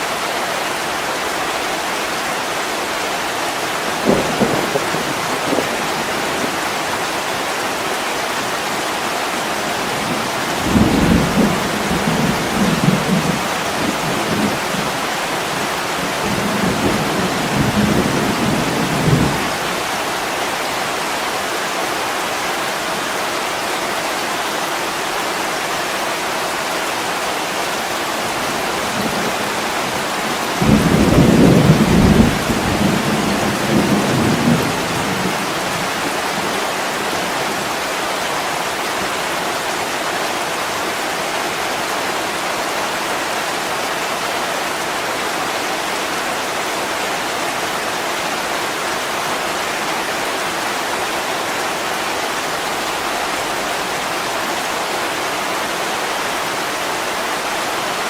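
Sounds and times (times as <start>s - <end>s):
heavy rain falling: 0.0s - 58.0s
thunder rumbling: 4.0s - 6.6s, 28.4s - 37.7s.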